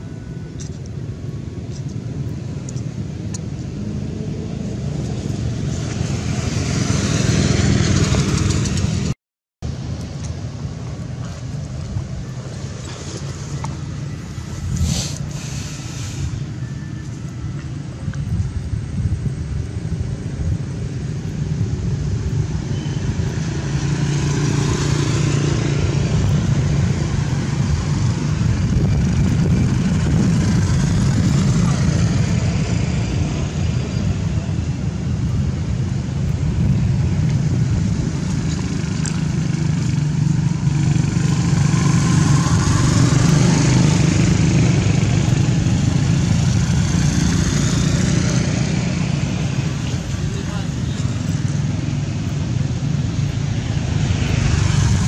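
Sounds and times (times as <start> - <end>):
traffic passing by: 0.0 - 55.0.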